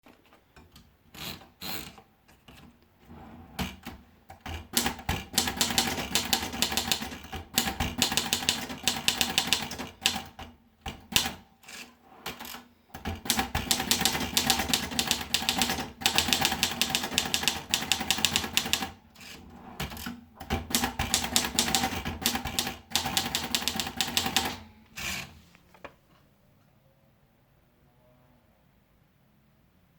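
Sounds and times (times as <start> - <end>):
manual typewriter keystrokes: 3.6 - 25.3.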